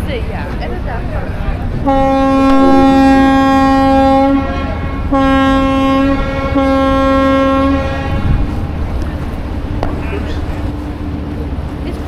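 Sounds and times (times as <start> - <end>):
ship air horn blasts: 1.8 - 8.8.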